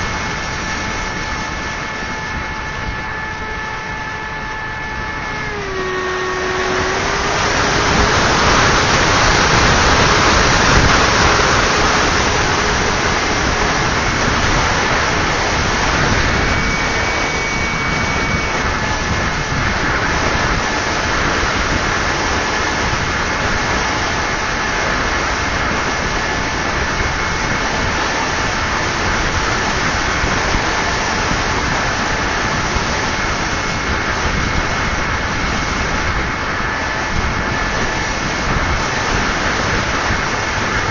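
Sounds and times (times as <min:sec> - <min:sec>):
model plane motor whine: 0:00.0 - 0:40.9
rushing air noise: 0:00.0 - 0:40.9.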